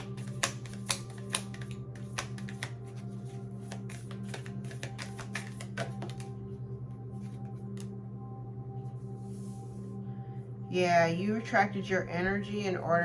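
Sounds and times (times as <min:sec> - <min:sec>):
cards being shuffled: 0:00.0 - 0:06.3
soft ambient music: 0:00.0 - 0:13.0
low drone: 0:05.9 - 0:13.0.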